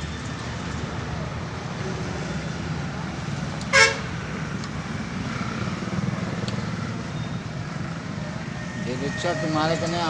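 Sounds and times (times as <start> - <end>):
road traffic rumble: 0.0 - 10.0
vehicle horn toot: 3.7 - 4.1.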